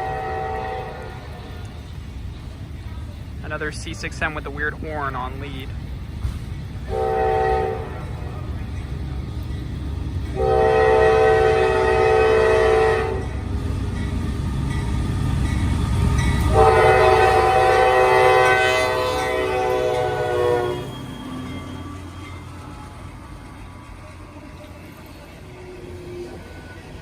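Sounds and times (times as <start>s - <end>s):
locomotive air horn blasts: 0.0s - 1.6s, 6.8s - 8.1s, 10.3s - 13.4s, 16.4s - 20.9s
train rumbling past: 0.0s - 27.0s.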